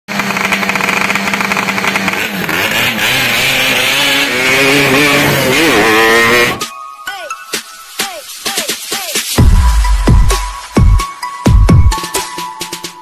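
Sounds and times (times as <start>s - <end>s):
two-stroke motorcycle engine revving: 0.1s - 6.6s.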